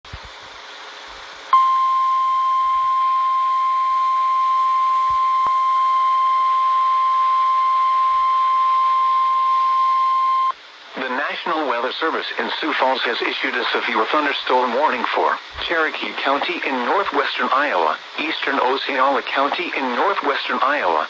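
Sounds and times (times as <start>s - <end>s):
faint radio hiss: 0.1s - 21.0s
loud electronic alarm tone: 1.6s - 10.5s.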